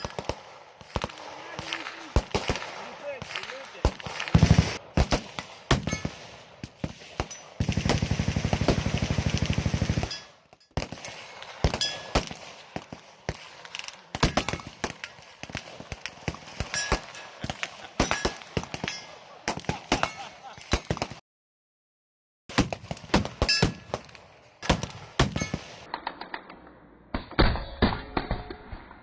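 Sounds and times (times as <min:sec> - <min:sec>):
single gunshots: 0:00.0 - 0:08.0
automatic gunfire: 0:00.0 - 0:18.8.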